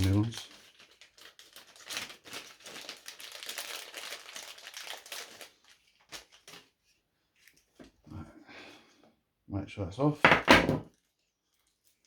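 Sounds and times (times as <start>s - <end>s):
plastic bag crinkling: 0.0s - 7.9s.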